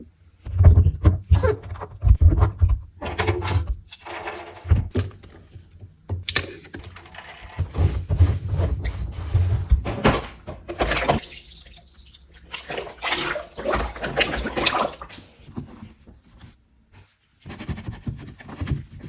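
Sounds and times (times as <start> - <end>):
rustling noise: 7.6 - 10.5, 15.2 - 19.0
clicks and knocks on washing machine: 9.5 - 11.2.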